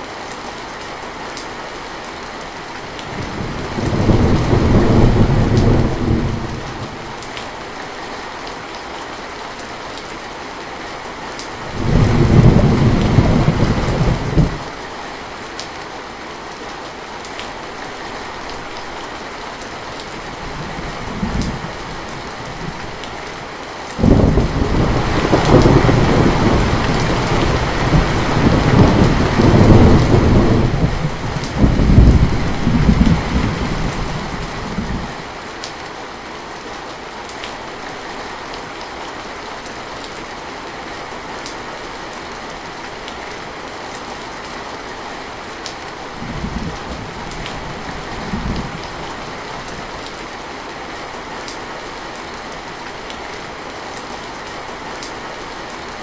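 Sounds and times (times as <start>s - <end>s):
heavy rain falling: 0.0s - 56.0s
thunder rumbling: 3.2s - 7.1s, 11.7s - 14.7s, 24.0s - 35.2s.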